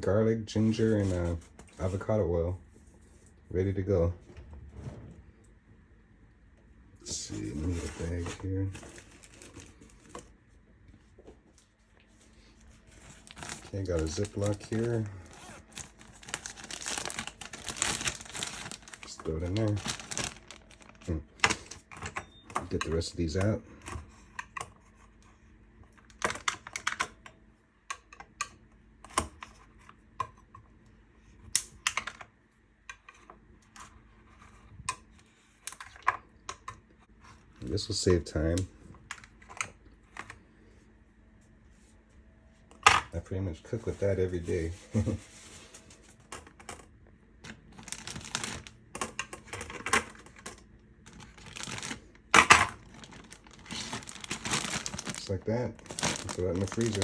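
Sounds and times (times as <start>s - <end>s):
plastic bag rustling: 7.1s - 10.3s, 11.6s - 22.0s, 43.8s - 46.6s, 47.4s - 57.0s
frozen cubes clicking: 52.8s - 57.0s.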